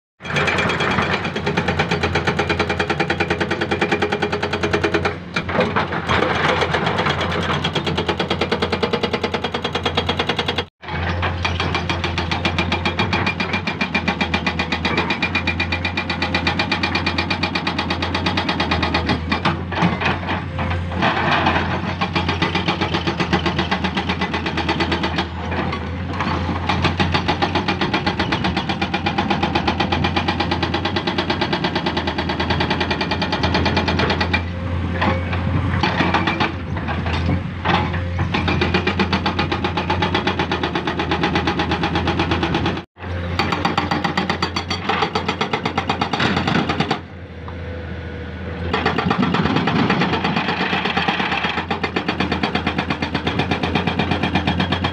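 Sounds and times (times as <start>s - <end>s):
excavator diesel engine humming: 47.0s - 48.9s.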